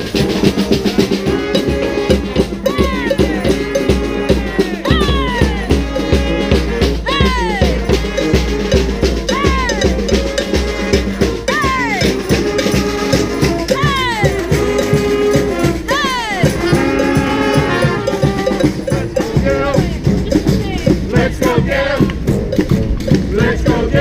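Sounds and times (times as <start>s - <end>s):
brass band playing: 0.0s - 24.0s.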